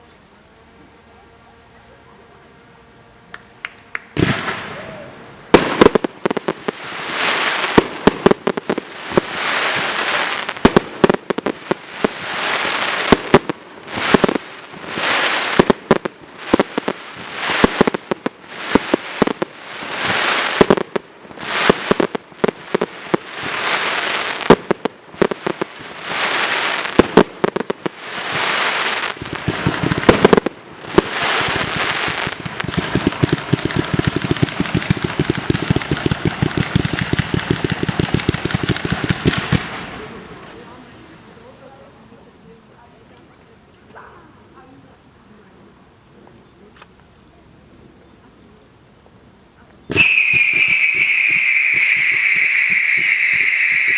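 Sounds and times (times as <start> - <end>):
small firework pops: 3.3 - 6.0, 26.9 - 41.8, 48.4 - 53.9
firework bangs: 3.3 - 43.1, 49.8 - 53.9
hissing crackle: 21.6 - 53.9.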